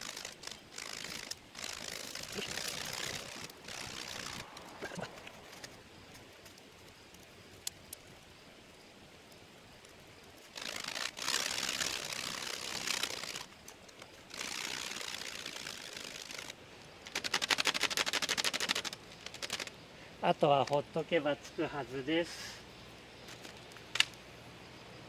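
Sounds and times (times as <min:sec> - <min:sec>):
faint clicks: 0:00.0 - 0:08.2, 0:09.3 - 0:19.8
burning leaves crackling: 0:00.0 - 0:24.3.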